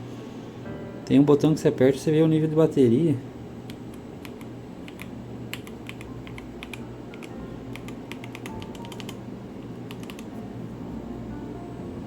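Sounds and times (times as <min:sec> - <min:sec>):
mechanical keyboard typing: 0:04.2 - 0:09.2, 0:09.9 - 0:10.3.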